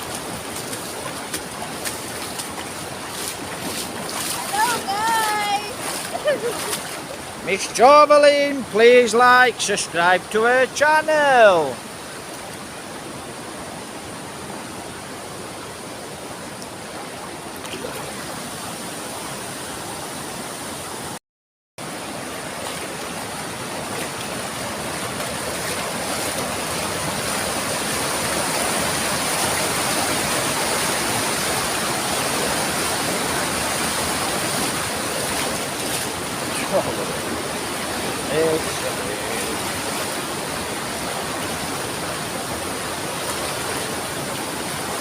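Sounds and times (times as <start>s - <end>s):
waterfall rushing: 0.0s - 21.2s, 21.8s - 45.0s.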